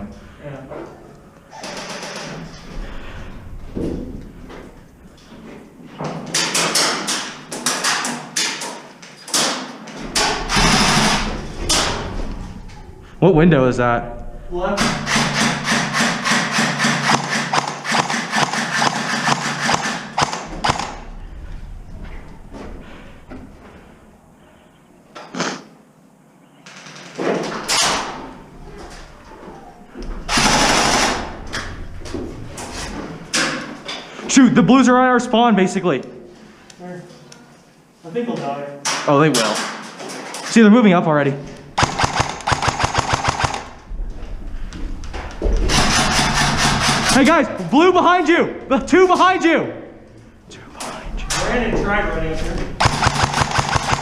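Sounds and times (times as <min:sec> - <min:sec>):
airsoft guns firing: 0:09.4 - 0:12.0, 0:14.8 - 0:21.2, 0:30.3 - 0:31.4, 0:41.8 - 0:43.9, 0:45.6 - 0:47.3, 0:52.8 - 0:54.0.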